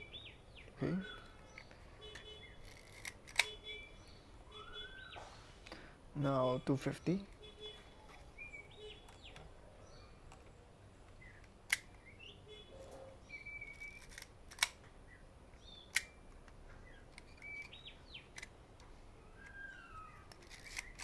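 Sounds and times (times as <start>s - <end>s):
faint bird chirps: 0.0s - 5.6s, 6.3s - 10.2s, 11.2s - 14.2s, 15.1s - 18.3s, 19.2s - 21.0s
camera shutter clicking: 2.7s - 3.6s.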